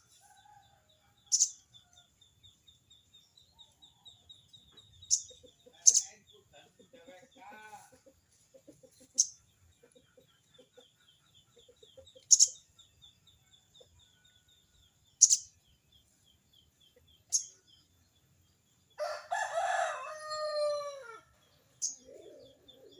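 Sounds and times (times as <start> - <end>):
rooster crowing: 19.0 - 21.3.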